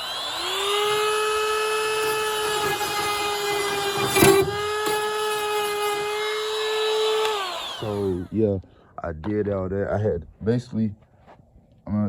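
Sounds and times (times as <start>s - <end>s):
rotary tool whining: 0.0s - 8.4s.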